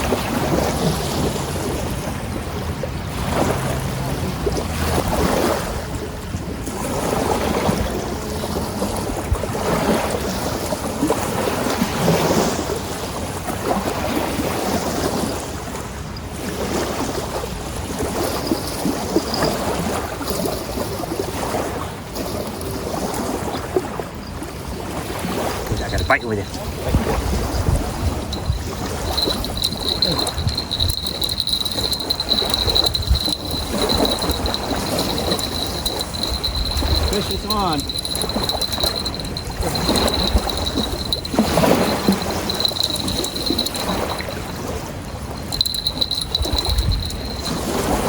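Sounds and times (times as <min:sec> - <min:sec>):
wind buffeting microphone: 0:24.2 - 0:48.0.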